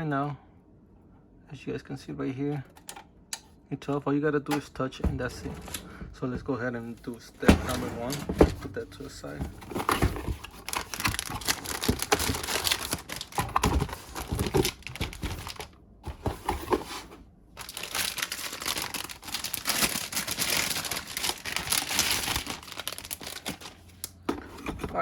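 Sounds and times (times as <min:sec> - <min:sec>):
packaging crinkling and rustling: 0:06.1 - 0:25.0.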